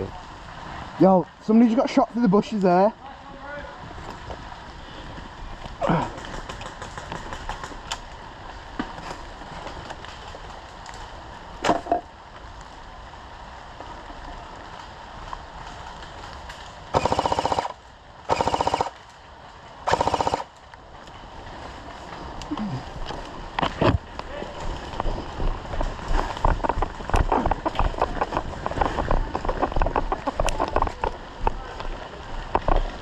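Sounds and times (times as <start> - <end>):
airsoft machine gun bursts: 17.0 - 18.9, 19.9 - 20.5.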